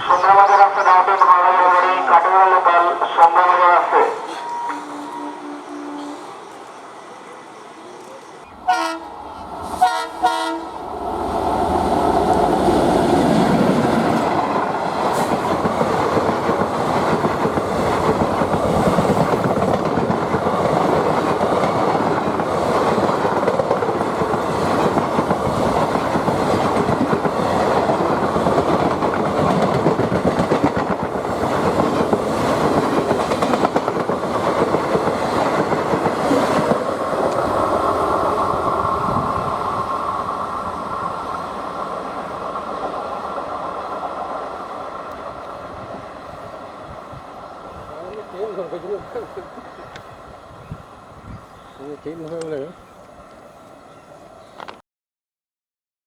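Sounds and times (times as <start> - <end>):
locomotive horn blasts: 0.0 - 6.4, 8.5 - 10.8
train passing at speed: 0.0 - 54.8
wheels clacking over rail joints: 8.4 - 50.4, 51.8 - 53.8.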